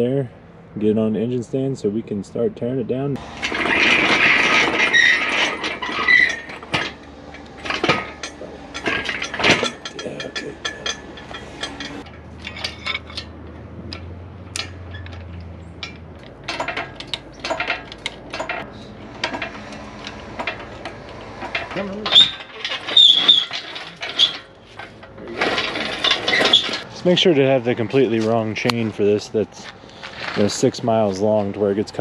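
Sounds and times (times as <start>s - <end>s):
chain and hoist clanking: 3.2s - 28.8s.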